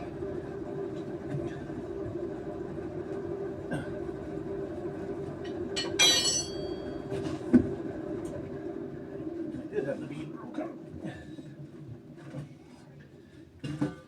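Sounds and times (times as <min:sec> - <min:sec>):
steady low hum: 0:00.0 - 0:12.4
sharp metallic clank: 0:05.8 - 0:06.8.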